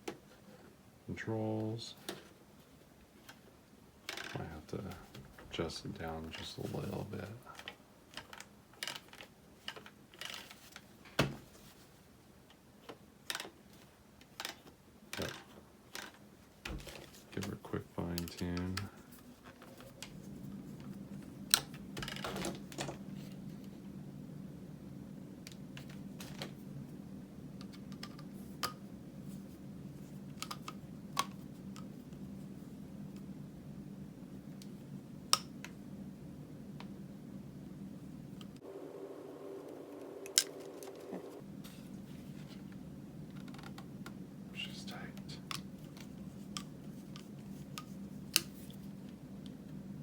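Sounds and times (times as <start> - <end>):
steady low hum: 0.0 - 8.7, 10.9 - 50.0
hard plastic parts clicking: 12.9 - 20.2.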